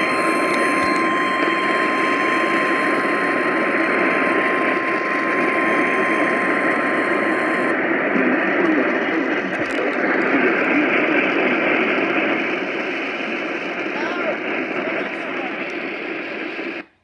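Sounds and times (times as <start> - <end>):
thin steady whistle tone: 0.0 - 8.4
radio static hiss: 0.0 - 17.0.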